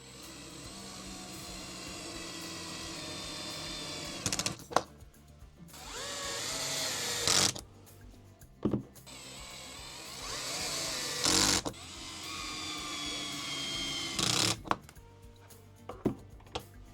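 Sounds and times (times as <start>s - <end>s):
electric screwdriver motor whine: 0.0s - 4.6s, 5.8s - 7.6s, 9.1s - 14.7s.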